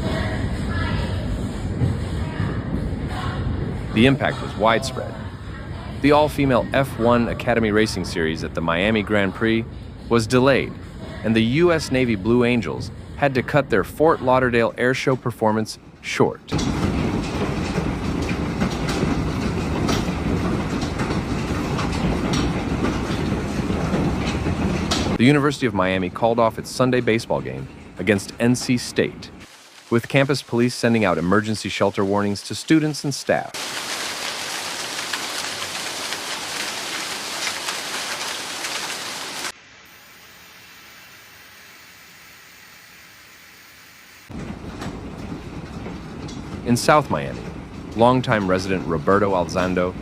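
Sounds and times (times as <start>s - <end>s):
pouring rain: 29.4s - 43.6s.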